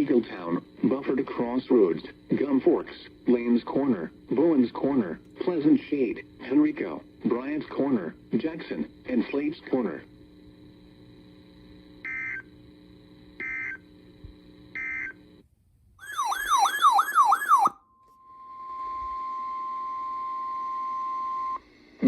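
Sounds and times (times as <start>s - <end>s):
faint hum: 0.0s - 22.0s
warbling siren-like sweep: 16.0s - 20.5s.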